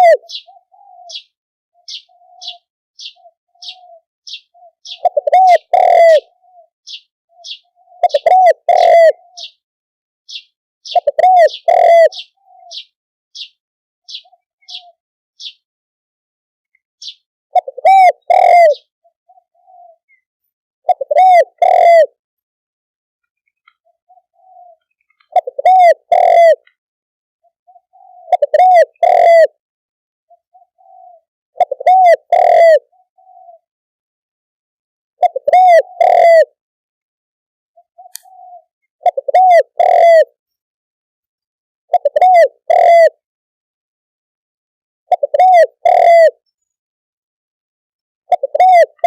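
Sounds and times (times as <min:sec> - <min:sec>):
dove cooing: 0:00.0 - 0:09.6, 0:10.3 - 0:13.5, 0:14.1 - 0:15.6, 0:17.0 - 0:20.2, 0:20.8 - 0:22.2, 0:23.8 - 0:26.8, 0:27.4 - 0:29.6, 0:30.3 - 0:33.7, 0:35.2 - 0:36.6, 0:37.8 - 0:40.4, 0:41.9 - 0:43.2, 0:45.1 - 0:46.4, 0:48.3 - 0:49.0.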